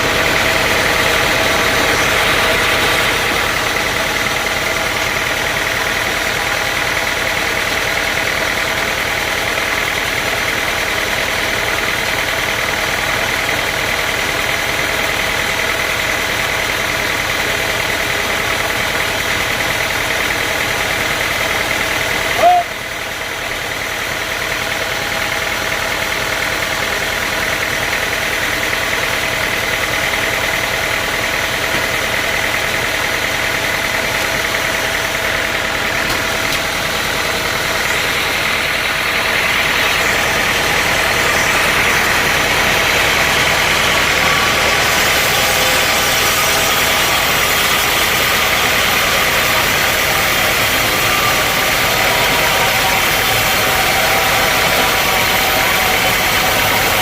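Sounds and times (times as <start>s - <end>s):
sawmill machinery running: 0.0s - 57.0s.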